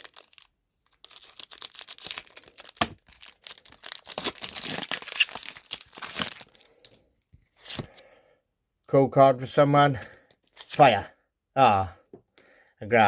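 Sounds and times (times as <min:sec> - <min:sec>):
foil pack tearing and crinkling: 0:00.0 - 0:06.9.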